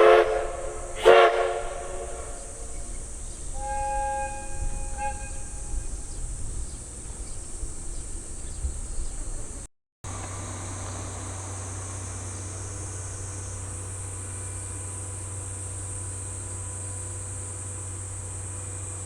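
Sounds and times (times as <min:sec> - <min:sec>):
low hum: 0:00.0 - 0:09.3
train rumbling: 0:00.0 - 0:19.0.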